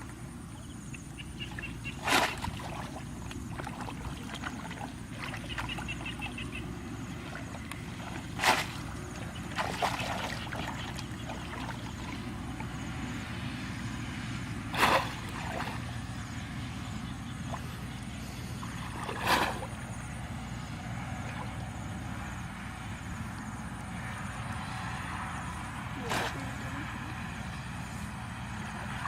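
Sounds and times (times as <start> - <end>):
steady low rumble: 0.0 - 29.0
faint bird chirps: 0.5 - 2.1, 5.2 - 6.8
water splashing: 1.2 - 13.7, 14.6 - 16.2, 17.3 - 20.2, 20.9 - 22.4, 25.9 - 27.0.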